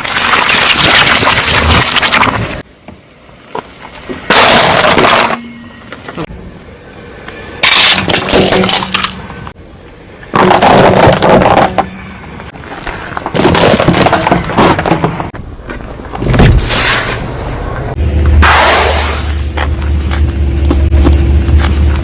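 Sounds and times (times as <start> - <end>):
objects crunching and cracking: 0.0 - 2.6, 13.0 - 15.1.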